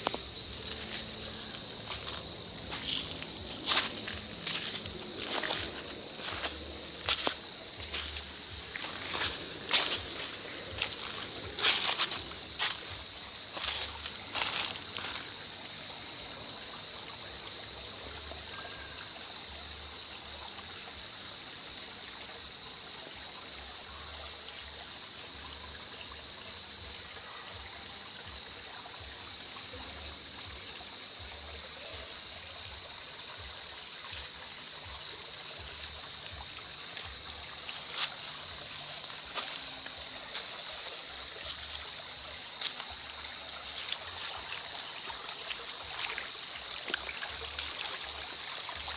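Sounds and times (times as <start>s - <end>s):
creek trickling: 0.0s - 48.9s.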